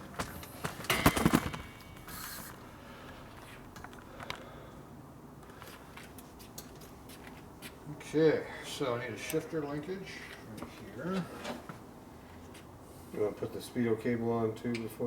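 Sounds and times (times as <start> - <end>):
tools and parts clinking: 0.2 - 2.3.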